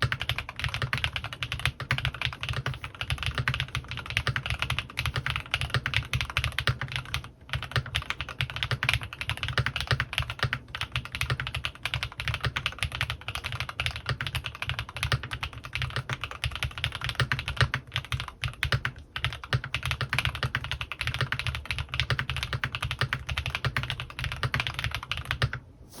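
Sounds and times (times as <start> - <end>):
mechanical keyboard typing: 0.0 - 25.6.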